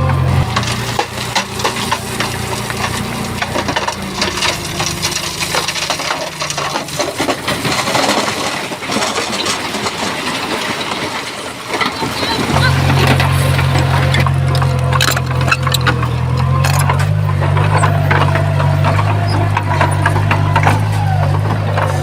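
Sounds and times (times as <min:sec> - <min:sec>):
heavy machine engine hum: 0:00.0 - 0:22.0
stone and soil tumbling: 0:00.0 - 0:22.0.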